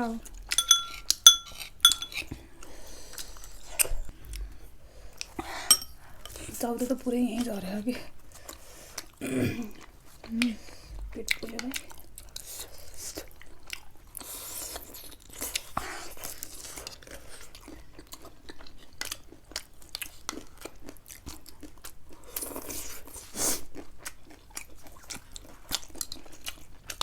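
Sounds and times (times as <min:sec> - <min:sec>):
person chewing and crunching food: 0:11.9 - 0:27.0.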